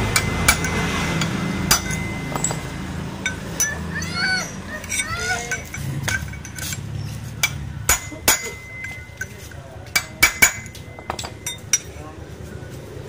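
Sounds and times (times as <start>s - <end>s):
tools striking metal: 0.0s - 12.0s
short rising-and-falling calls: 3.4s - 5.6s.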